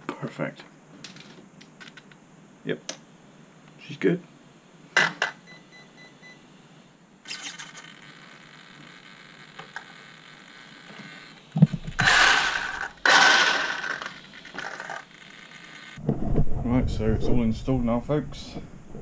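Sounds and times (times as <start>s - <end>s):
small cooling fan whirring: 0.1s - 19.0s
thumps: 11.6s - 14.9s.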